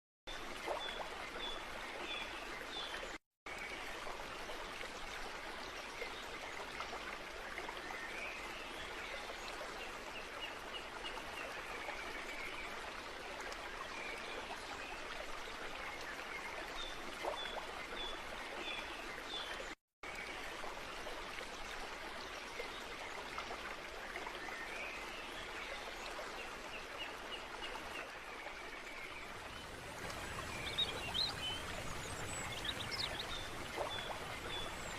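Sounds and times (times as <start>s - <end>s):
stream flowing: 0.3s - 34.9s
birds chirping: 29.2s - 34.9s.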